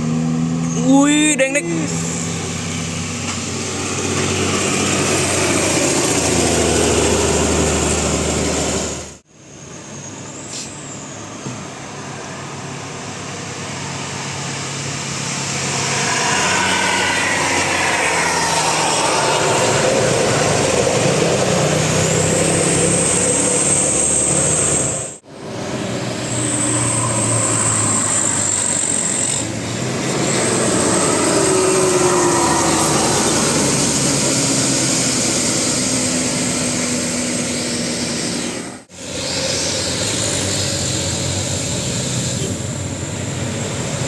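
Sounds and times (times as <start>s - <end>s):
diesel buses driving past: 0.0s - 44.0s.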